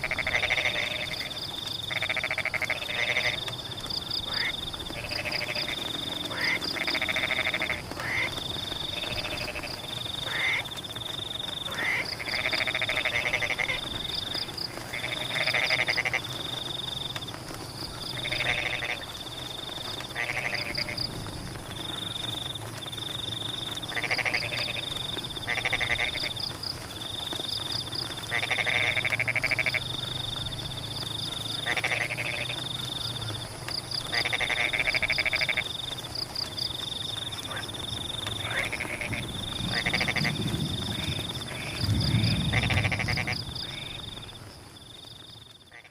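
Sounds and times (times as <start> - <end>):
frogs croaking: 0.0 - 45.9
low rumble: 39.1 - 44.2.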